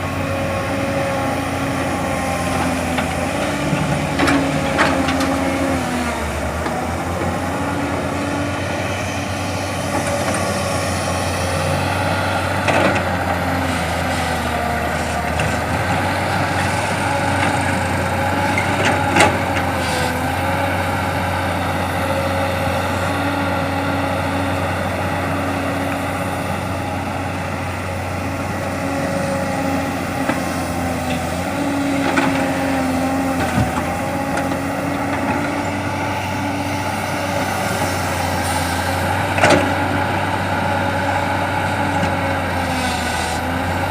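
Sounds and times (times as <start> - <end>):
diesel excavator running: 0.0 - 43.9.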